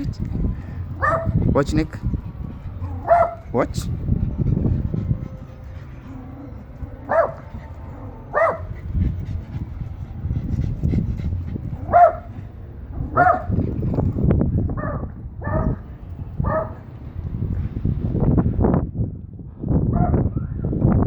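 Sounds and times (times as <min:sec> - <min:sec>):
steady low rumble: 0:00.0 - 0:21.0
dog barking: 0:01.0 - 0:01.4, 0:03.0 - 0:03.4, 0:07.1 - 0:07.4, 0:08.3 - 0:08.7, 0:11.9 - 0:12.3, 0:13.2 - 0:13.5, 0:14.8 - 0:15.8, 0:16.4 - 0:16.8.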